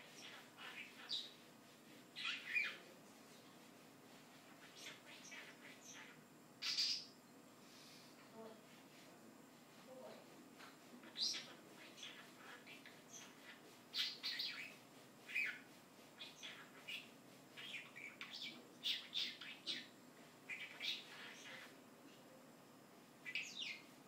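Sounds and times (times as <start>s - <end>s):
bird chirping and chattering: 0.0s - 1.4s, 2.2s - 2.8s, 4.5s - 7.1s, 11.0s - 19.9s, 20.5s - 21.7s, 23.2s - 23.8s.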